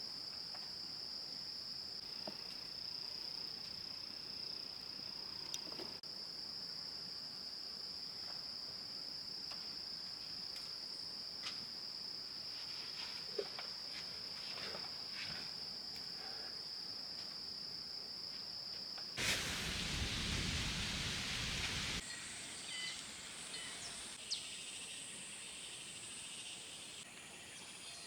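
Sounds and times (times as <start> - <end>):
insects trilling: 19.2 - 28.0.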